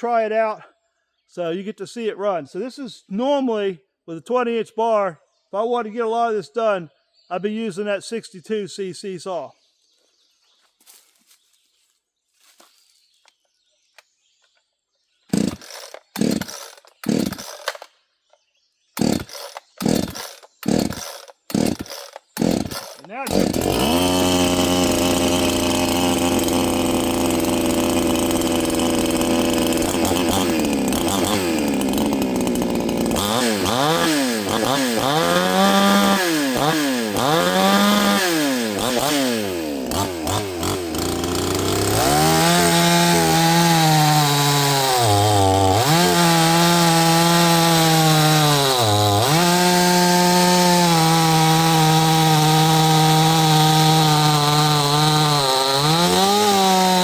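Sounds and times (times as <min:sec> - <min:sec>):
chainsaw revving: 0:15.3 - 0:17.9, 0:19.0 - 0:57.0.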